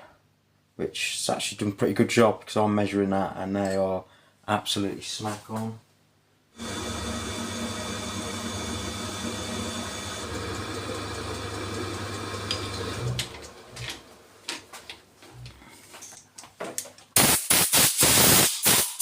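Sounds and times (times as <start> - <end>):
electric motor humming: 6.6 - 14.1.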